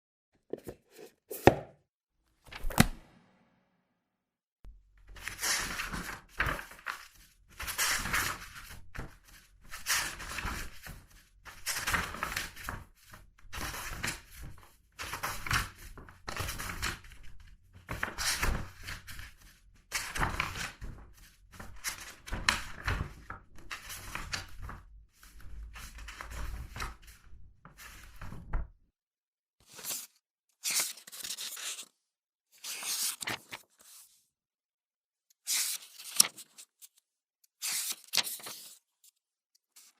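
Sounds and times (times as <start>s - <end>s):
book pages turning: 0.5s - 1.6s, 2.4s - 3.1s, 29.6s - 31.9s, 32.6s - 34.2s, 35.5s - 37.0s, 37.6s - 38.8s.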